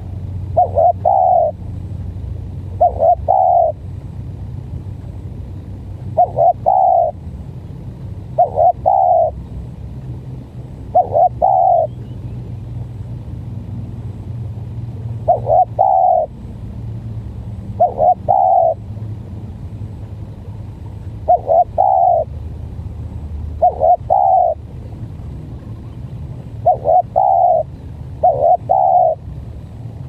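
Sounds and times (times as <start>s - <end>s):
dove cooing: 0.0s - 1.6s, 2.7s - 3.8s, 6.2s - 7.2s, 8.4s - 9.4s, 10.8s - 12.2s, 15.2s - 16.4s, 17.7s - 18.8s, 21.2s - 22.4s, 23.6s - 24.7s, 26.6s - 29.2s.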